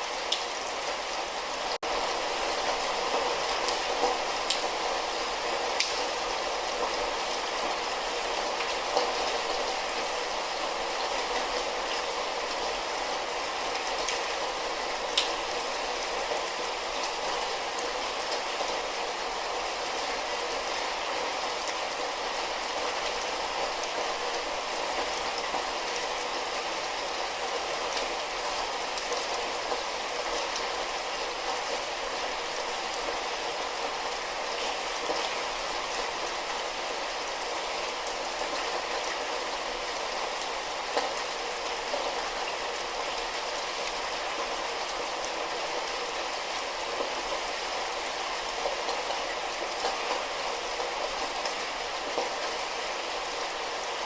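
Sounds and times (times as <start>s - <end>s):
light rain falling: 0.0s - 54.0s
raindrop ticks: 3.6s - 4.7s, 5.8s - 6.0s, 15.2s - 15.6s.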